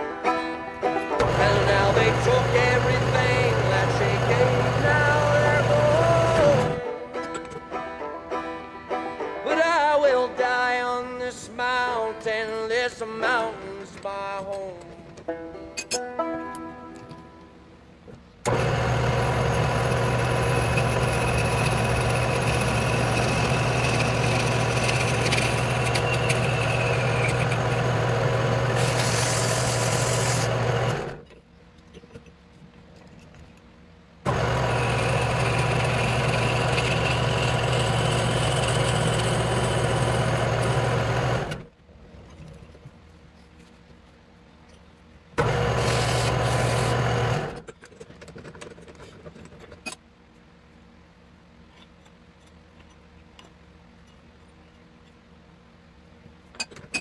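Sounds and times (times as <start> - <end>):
lathe motor humming: 1.2 - 6.8, 18.5 - 31.2, 34.3 - 41.7, 45.4 - 47.6.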